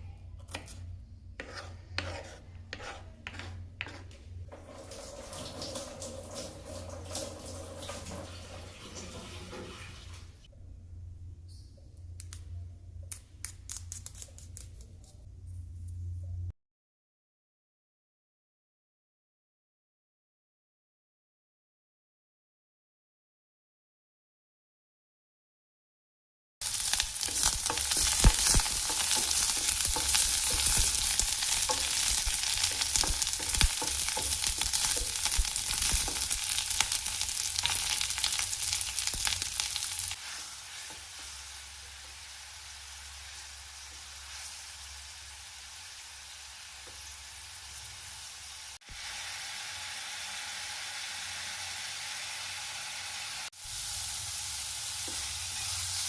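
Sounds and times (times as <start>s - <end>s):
food sizzling in a pan: 26.6s - 56.0s.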